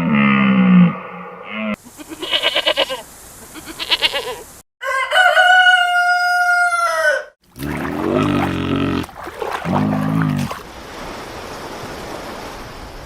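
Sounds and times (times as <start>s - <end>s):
rooster crowing: 4.8s - 7.3s.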